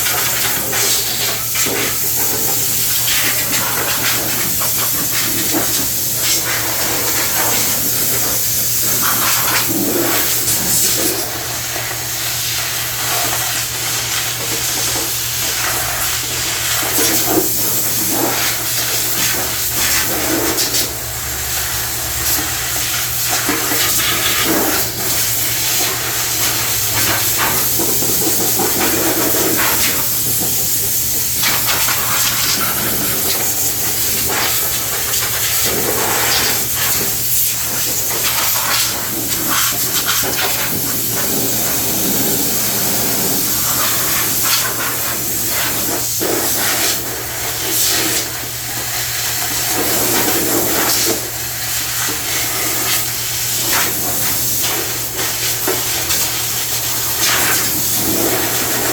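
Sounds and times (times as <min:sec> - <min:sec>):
hissing water spray: 0:00.0 - 0:58.9.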